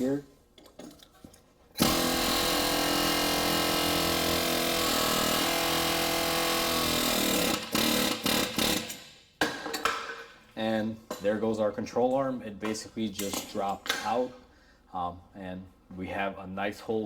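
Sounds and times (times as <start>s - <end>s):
pneumatic air hammer rapid blows: 1.8s - 9.3s.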